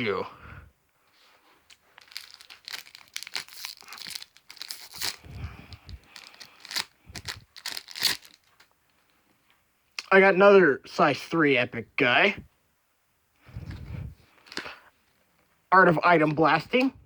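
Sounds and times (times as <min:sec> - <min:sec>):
plastic wrapper crinkling and tearing: 0:01.6 - 0:08.7.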